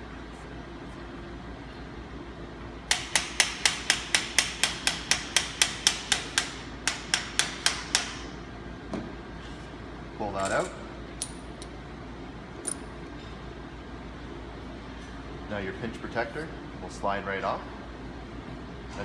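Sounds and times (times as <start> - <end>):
hammer tapping on metal: 2.9 - 8.2.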